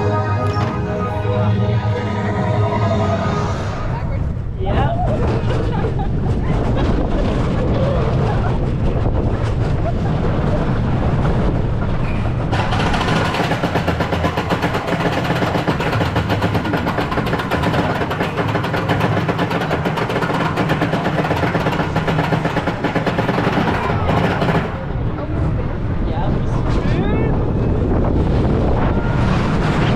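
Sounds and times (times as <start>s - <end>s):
roller coaster train rumbling on track: 0.0s - 29.9s
wind on microphone: 3.4s - 12.6s, 24.8s - 29.9s.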